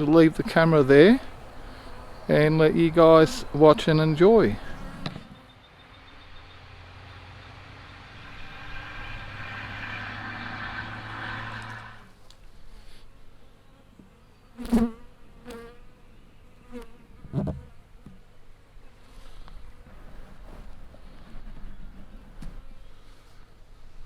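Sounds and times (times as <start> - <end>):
bees buzzing: 0.0 - 12.2.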